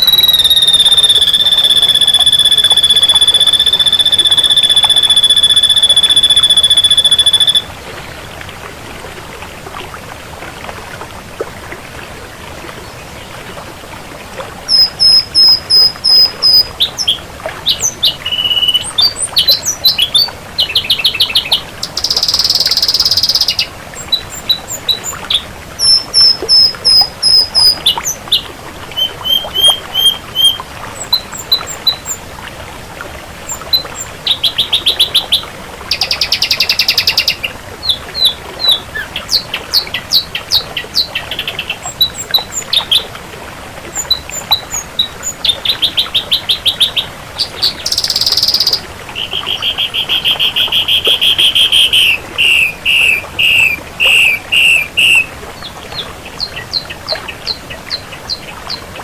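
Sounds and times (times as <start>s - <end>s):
bird singing whistles and trills: 0.0s - 7.7s, 14.7s - 32.3s, 33.5s - 43.1s, 43.9s - 58.8s.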